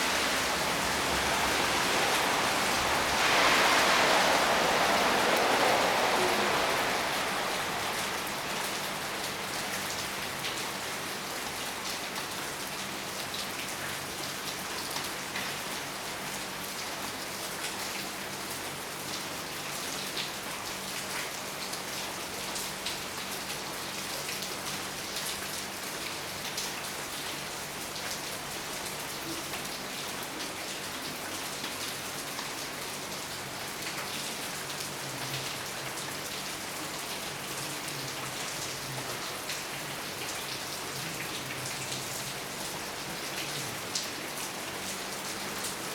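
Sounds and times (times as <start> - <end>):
steady rain falling: 0.0 - 45.9.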